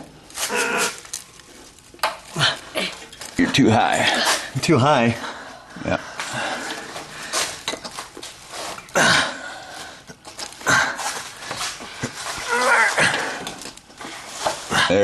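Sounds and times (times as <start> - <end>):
people straining and grunting: 2.2 - 7.1, 8.9 - 11.2, 12.3 - 13.8, 14.6 - 15.0.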